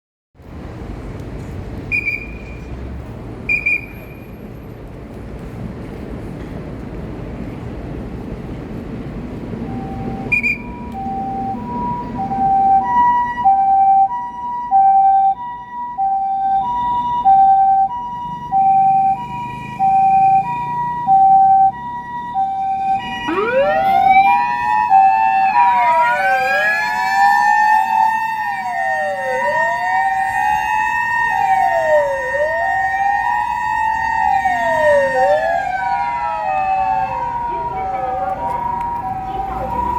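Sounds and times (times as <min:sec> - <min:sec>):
electronic two-tone siren: 0:09.7 - 0:39.9
mechanical motor siren wailing: 0:09.7 - 0:39.9.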